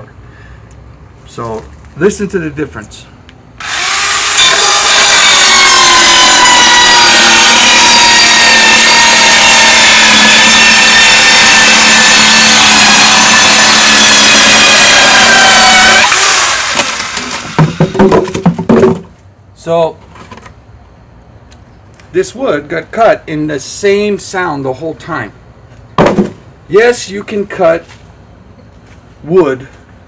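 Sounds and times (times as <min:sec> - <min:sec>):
electric saw cutting wood: 0:03.6 - 0:18.2.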